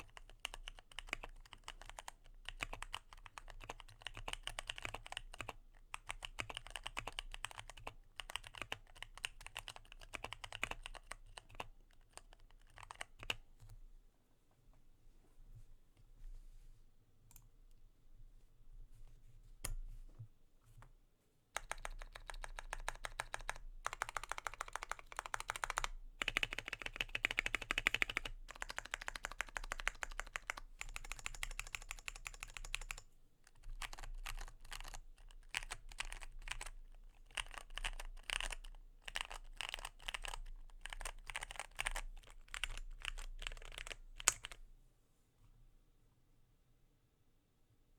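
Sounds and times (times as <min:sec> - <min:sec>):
mechanical keyboard typing: 0:00.0 - 0:13.4, 0:21.6 - 0:44.6.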